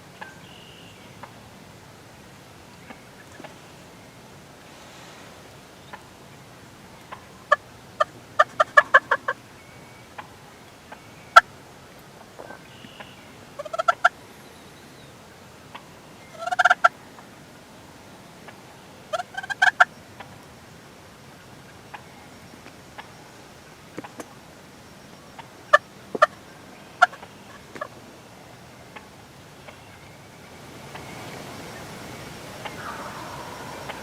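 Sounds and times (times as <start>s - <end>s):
turkey calling: 7.0s - 11.6s, 12.4s - 14.2s, 15.6s - 17.0s, 18.4s - 20.4s, 25.3s - 30.0s, 30.8s - 34.0s.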